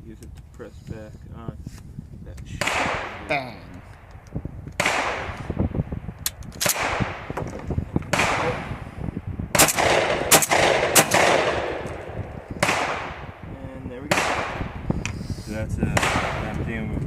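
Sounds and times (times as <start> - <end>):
shotgun shots with echo: 2.6 - 3.4, 4.8 - 5.5, 6.6 - 7.4, 8.1 - 8.7, 9.5 - 13.4, 14.0 - 14.8, 15.9 - 16.5.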